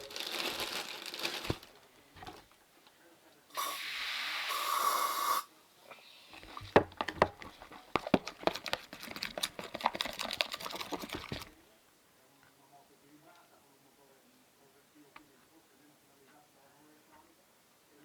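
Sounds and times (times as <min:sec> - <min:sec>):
aerosol spray hissing: 0:03.6 - 0:05.5
slime mixed with sticky clicks: 0:06.4 - 0:11.5.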